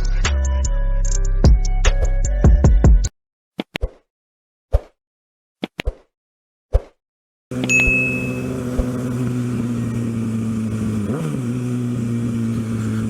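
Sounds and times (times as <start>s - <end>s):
short sharp dings: 7.6s - 8.8s
motorcycle engine idling: 7.8s - 11.0s.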